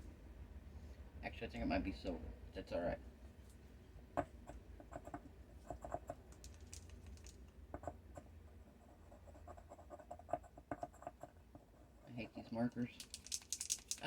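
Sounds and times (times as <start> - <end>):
faint low hum: 0.0 - 14.0
marker clicks and taps: 5.8 - 8.0, 10.3 - 11.2, 13.0 - 14.0.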